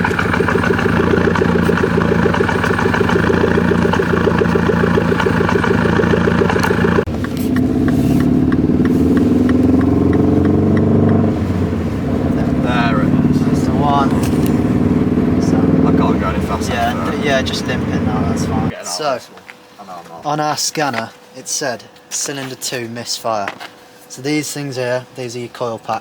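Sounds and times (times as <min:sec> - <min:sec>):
misfiring car engine: 0:00.0 - 0:18.7
smooth engine tone: 0:00.0 - 0:18.8.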